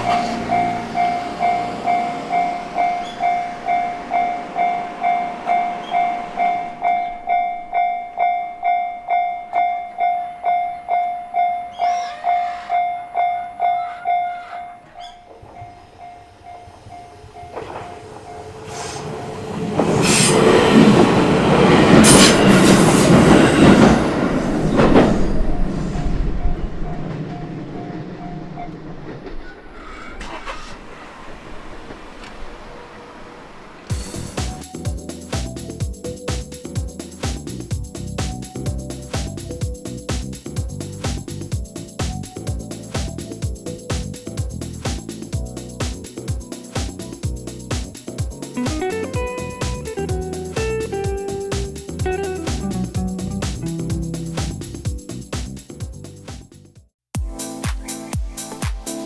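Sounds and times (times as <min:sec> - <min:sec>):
level crossing alarm bell ringing: 0:00.0 - 0:19.0
train rumbling over crossing: 0:00.0 - 0:56.6.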